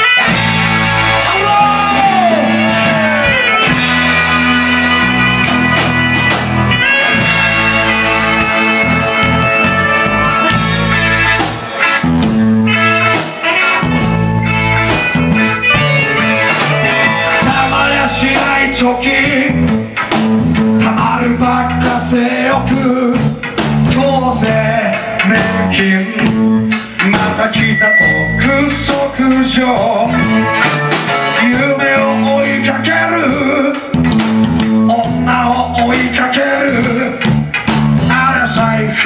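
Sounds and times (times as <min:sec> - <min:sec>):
repeating bass line: 0:00.0 - 0:39.0
rock guitar: 0:00.0 - 0:39.0
singing vocals: 0:01.1 - 0:04.3, 0:17.4 - 0:19.9, 0:20.7 - 0:30.4, 0:31.4 - 0:33.9, 0:34.9 - 0:37.3, 0:38.1 - 0:39.0.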